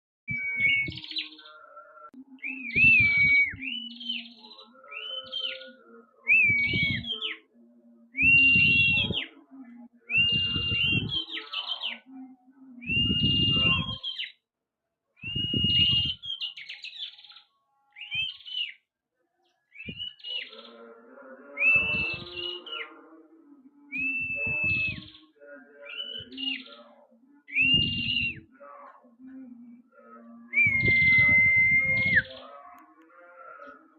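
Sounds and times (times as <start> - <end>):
bird singing whistled phrases: 0.3 - 1.6, 2.4 - 7.4, 8.2 - 9.3, 10.1 - 12.1, 12.8 - 14.4, 15.2 - 18.8, 19.7 - 20.7, 21.6 - 22.9, 23.9 - 26.8, 27.5 - 28.5, 30.5 - 32.5.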